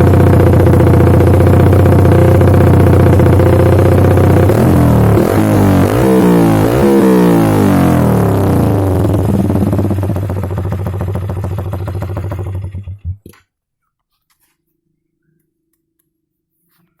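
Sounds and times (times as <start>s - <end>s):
motorcycle engine idling: 0.0s - 13.3s.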